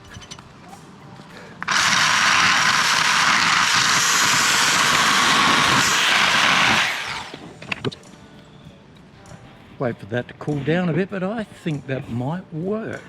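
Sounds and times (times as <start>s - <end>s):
electric drill drilling plastic: 1.6s - 7.6s.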